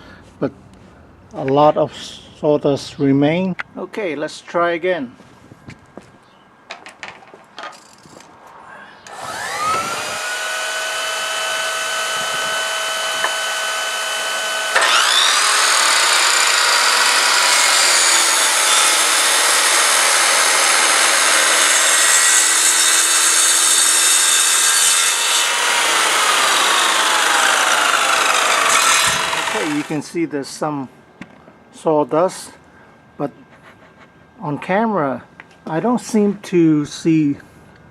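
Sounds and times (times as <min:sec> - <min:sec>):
shop vacuum running: 0:09.1 - 0:17.5, 0:25.6 - 0:29.9
circular saw cutting wood: 0:09.1 - 0:30.0.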